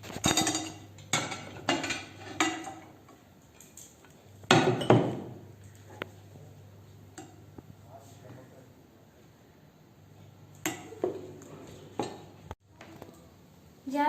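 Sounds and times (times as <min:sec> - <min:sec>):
dishes and utensils clattering: 0:00.0 - 0:06.2, 0:07.1 - 0:07.6, 0:10.5 - 0:12.4.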